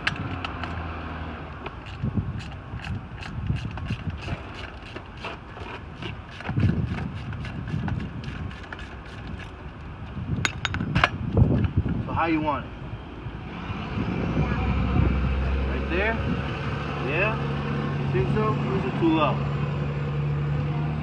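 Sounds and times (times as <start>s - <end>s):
low bumps of tool handling: 10.3s - 11.8s.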